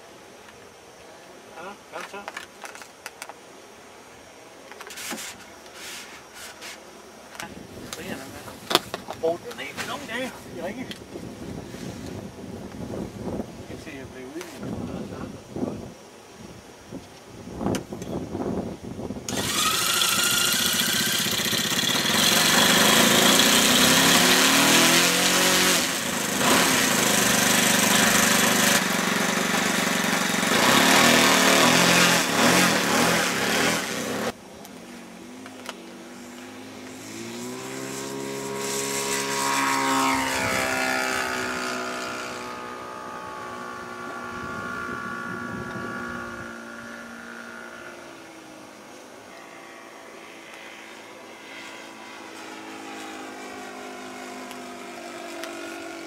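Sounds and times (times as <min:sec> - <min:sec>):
propeller aircraft engine: 0:19.3 - 0:34.4, 0:35.5 - 0:48.7, 0:49.6 - 0:56.0.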